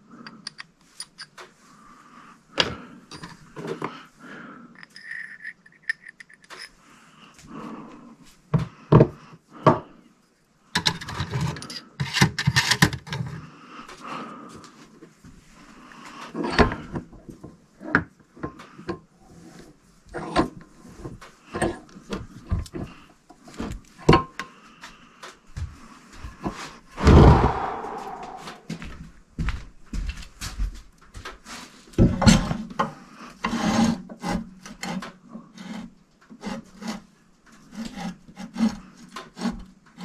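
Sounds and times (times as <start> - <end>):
tools and metal parts clattering: 4.8 - 6.8, 10.8 - 13.3.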